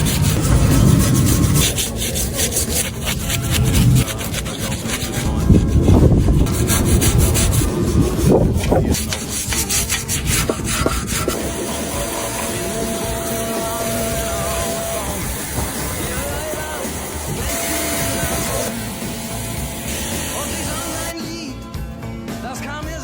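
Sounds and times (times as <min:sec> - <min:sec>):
hard scraping strokes: 0:00.0 - 0:21.1.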